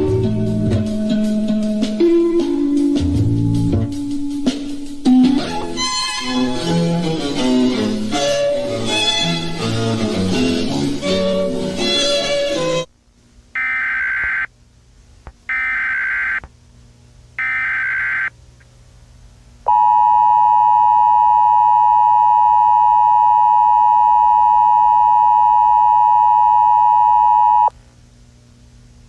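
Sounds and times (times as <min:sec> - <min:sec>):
screeching digital data bursts: 0:15.5 - 0:16.4.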